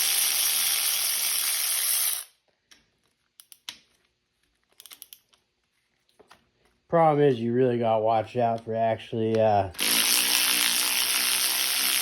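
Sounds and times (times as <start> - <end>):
cordless ratchet motor whirring: 0.0 - 2.3, 9.8 - 12.0
tool and socket clicks: 3.4 - 3.8, 4.7 - 5.4.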